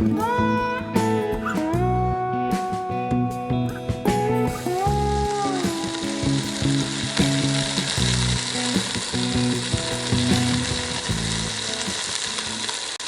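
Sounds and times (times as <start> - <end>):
plucked guitar music: 0.0 - 12.9
steady hiss: 5.3 - 13.0.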